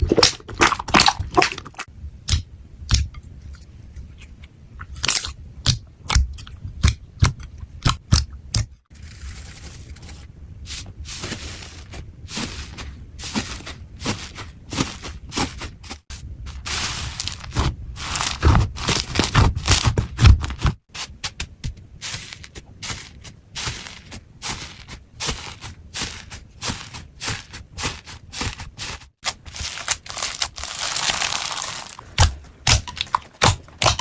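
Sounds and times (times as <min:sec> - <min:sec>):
slime scraping and crackling: 0:08.9 - 0:21.4, 0:22.0 - 0:34.0.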